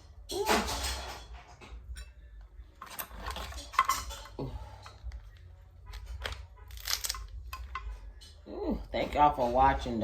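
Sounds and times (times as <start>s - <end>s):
cutlery clinking against dishes: 0.3s - 4.6s.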